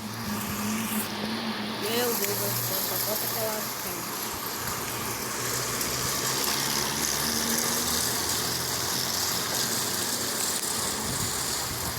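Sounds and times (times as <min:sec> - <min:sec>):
rain: 0:00.0 - 0:11.9
strong wind: 0:10.8 - 0:11.9.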